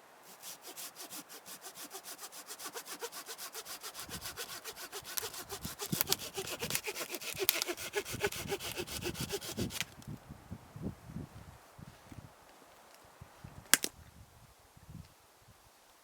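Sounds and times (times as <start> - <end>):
hand saw cutting wood: 0.3 - 9.9.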